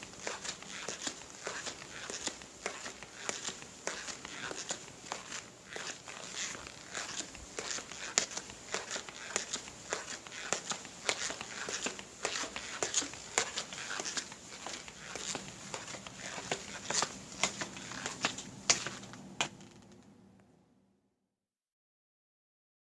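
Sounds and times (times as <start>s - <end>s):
footsteps: 0.0s - 20.0s.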